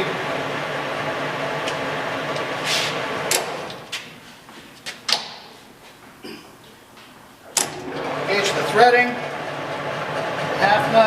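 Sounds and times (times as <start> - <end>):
lathe gear hum: 0.0 - 3.9, 7.5 - 11.0
lever clicks and clunks: 3.3 - 3.9, 5.1 - 5.4, 7.5 - 8.0.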